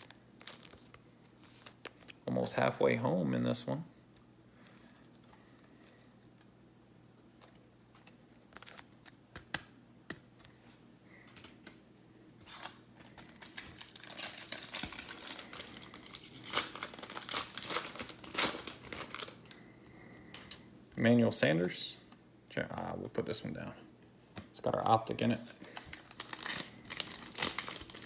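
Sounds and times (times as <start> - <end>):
wrapper crinkling and tearing: 0.0 - 2.2, 12.5 - 19.6, 25.1 - 28.0.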